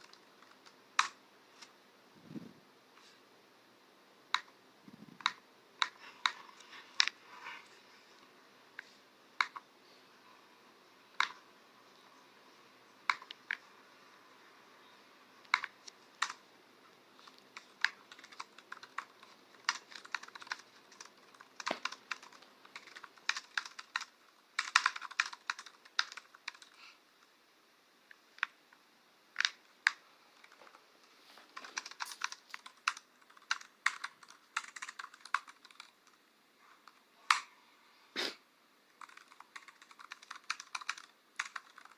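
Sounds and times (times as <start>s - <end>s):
typing on computer keyboard: 15.5s - 16.4s, 17.6s - 26.8s, 31.6s - 36.2s, 39.0s - 41.9s.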